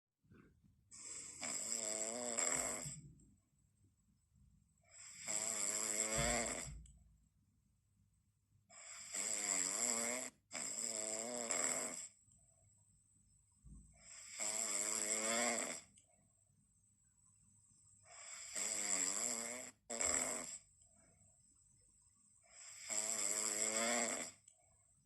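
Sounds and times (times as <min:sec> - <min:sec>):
person snoring: 0:01.0 - 0:03.0, 0:04.9 - 0:06.8, 0:08.7 - 0:12.2, 0:14.0 - 0:15.9, 0:18.1 - 0:20.6, 0:22.4 - 0:24.4.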